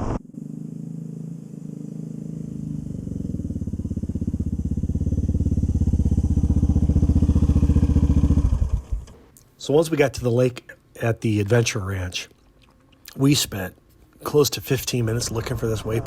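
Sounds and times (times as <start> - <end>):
motorcycle engine running: 0.0 - 9.2.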